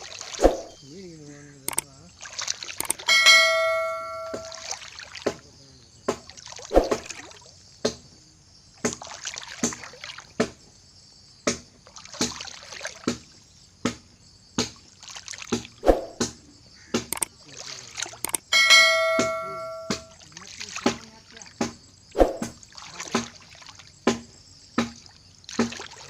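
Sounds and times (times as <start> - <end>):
water splashing and churning: 0.0 - 8.1, 8.7 - 10.6, 11.5 - 26.0
sharp knocks: 2.8 - 4.6, 6.1 - 7.1, 15.5 - 17.3, 18.3 - 20.1, 21.6 - 22.6, 24.0 - 25.0
bell-like ding: 3.0 - 4.6, 18.5 - 20.1.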